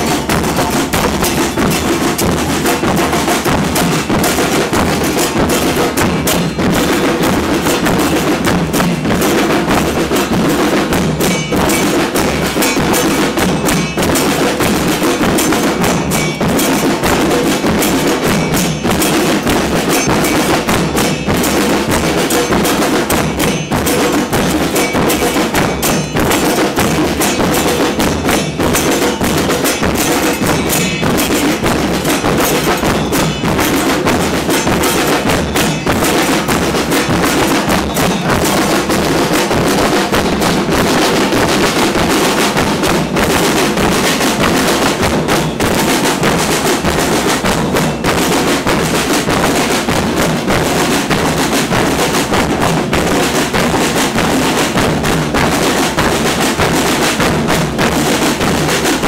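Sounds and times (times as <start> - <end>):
percussion group drumming: 0.0 - 59.0.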